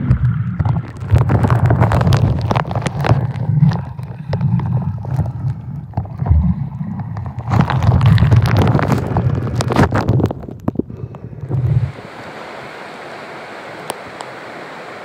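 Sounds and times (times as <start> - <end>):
waterfall water splashing: 11.6 - 15.0.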